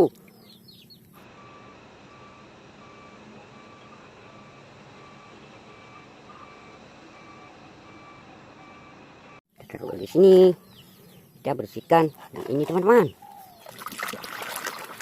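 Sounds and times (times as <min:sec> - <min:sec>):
vehicle reversing alarm beeps: 0:01.2 - 0:09.4.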